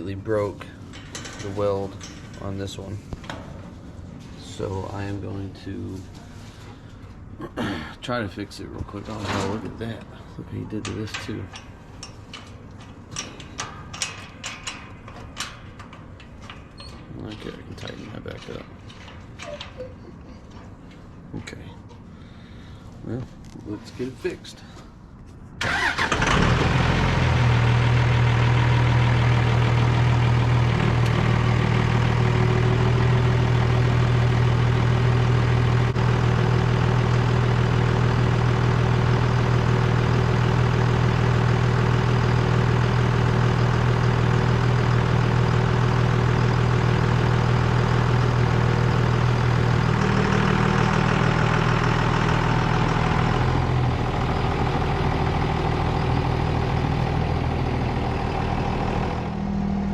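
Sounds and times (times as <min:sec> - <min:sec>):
engine starting and idling: 0:25.6 - 0:59.4.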